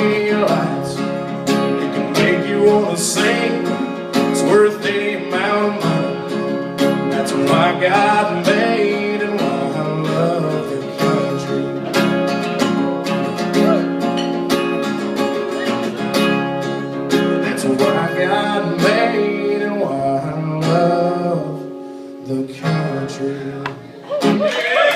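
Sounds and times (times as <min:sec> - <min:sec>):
acoustic guitar strumming: 0:00.0 - 0:24.5.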